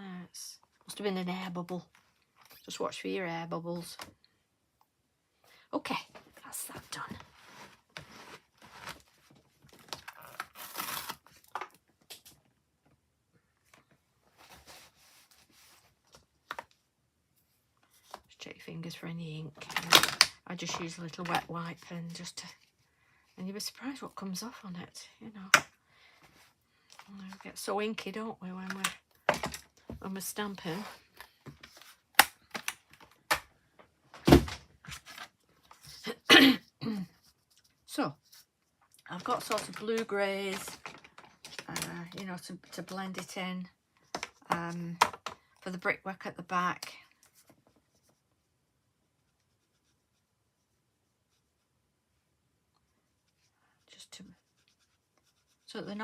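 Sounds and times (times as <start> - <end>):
paper rustling and scraping: 7.3 - 11.4, 14.3 - 16.2.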